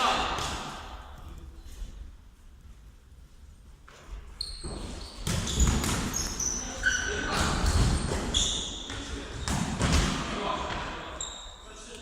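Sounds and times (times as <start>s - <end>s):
ball thumping and bouncing: 4.6s - 6.3s.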